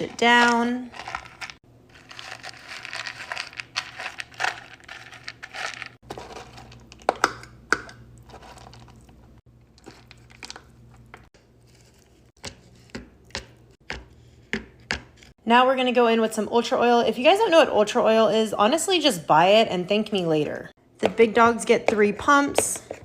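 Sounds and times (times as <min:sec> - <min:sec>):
crinkly rustling: 0:00.0 - 0:07.0.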